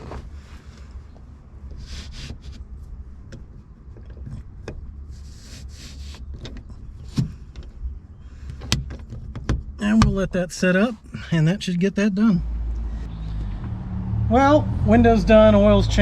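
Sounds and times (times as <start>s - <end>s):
sliding window scraping: 1.7s - 2.6s, 5.1s - 7.2s.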